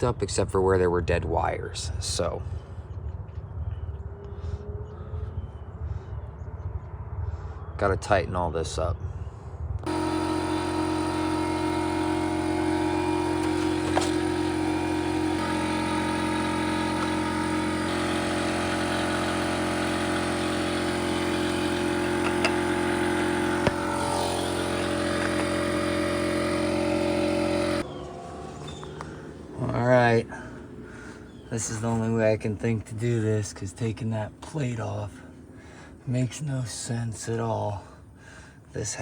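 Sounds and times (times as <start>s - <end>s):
motor running: 9.8s - 36.0s.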